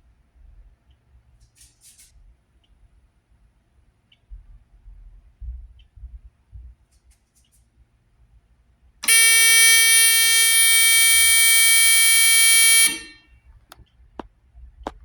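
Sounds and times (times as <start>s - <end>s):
alarm buzzer steady tone: 9.0s - 13.2s.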